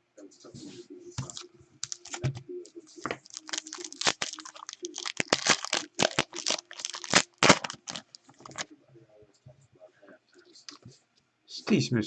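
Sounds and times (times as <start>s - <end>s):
foil wrapper crinkling: 1.2s - 2.3s, 3.0s - 8.7s.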